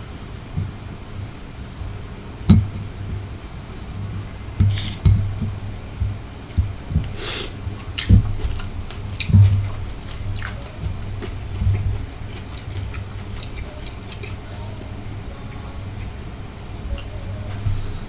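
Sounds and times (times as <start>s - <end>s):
low thumps: 1.8s - 7.1s
chewing with wet mouth smacks: 4.6s - 18.0s.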